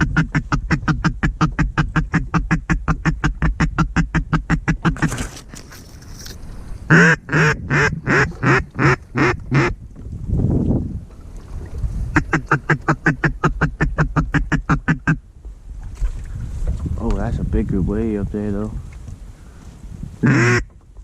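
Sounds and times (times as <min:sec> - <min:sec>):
duck call chatter: 0:00.0 - 0:05.2, 0:06.9 - 0:09.7, 0:12.2 - 0:15.2, 0:20.2 - 0:20.7
duck call quacks: 0:00.0 - 0:05.2, 0:06.9 - 0:09.7, 0:12.2 - 0:15.2, 0:20.2 - 0:20.7.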